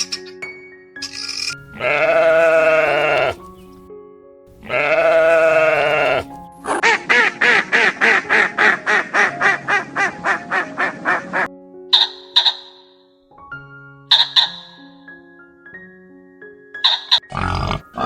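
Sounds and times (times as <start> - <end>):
soft background music: 0.0 - 18.0
sheep bleating: 1.7 - 3.4, 4.6 - 6.3
fast short pitched calls: 12.0 - 13.0, 14.1 - 14.8, 16.8 - 17.3.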